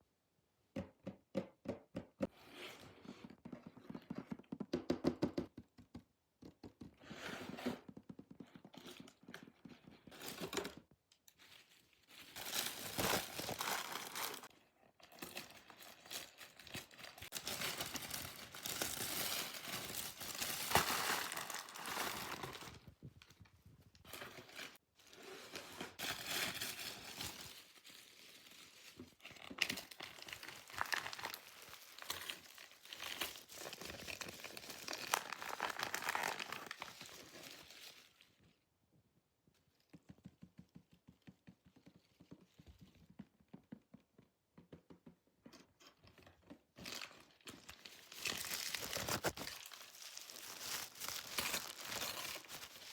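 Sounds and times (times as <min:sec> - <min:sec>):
plastic packaging crinkling: 0:11.3 - 0:14.5, 0:15.2 - 0:22.9, 0:26.2 - 0:38.3, 0:46.8 - 0:52.9.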